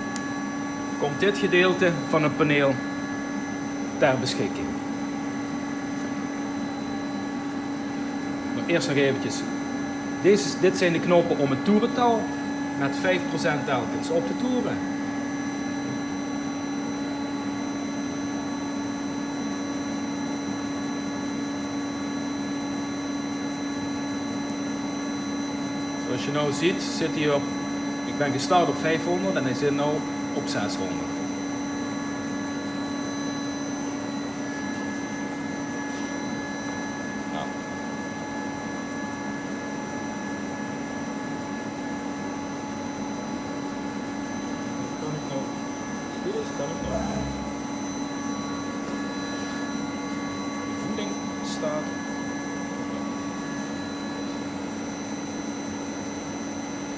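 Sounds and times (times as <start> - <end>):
high whine of spindle drive: 0.0 - 56.9
lathe spindle humming: 46.1 - 48.1.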